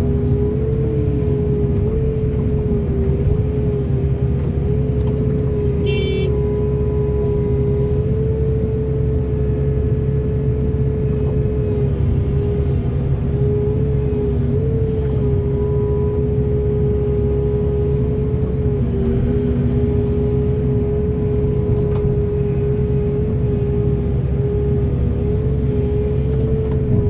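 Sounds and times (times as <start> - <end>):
excavator diesel engine running: 0.0 - 27.0
short high-pitched beep: 5.8 - 6.4.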